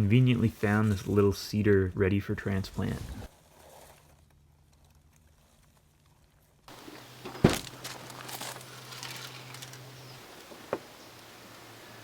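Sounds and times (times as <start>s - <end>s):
rustling and crinkling: 2.7s - 11.0s.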